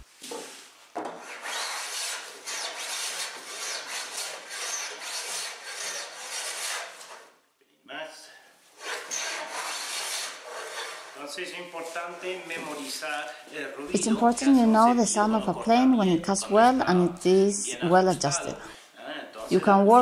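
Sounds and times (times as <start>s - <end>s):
hand plane shaving wood: 1.2s - 7.2s, 8.8s - 11.2s.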